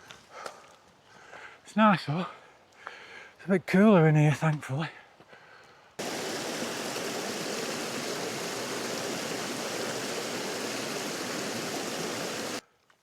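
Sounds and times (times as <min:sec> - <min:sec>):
fast-flowing stream water: 0:06.0 - 0:12.6.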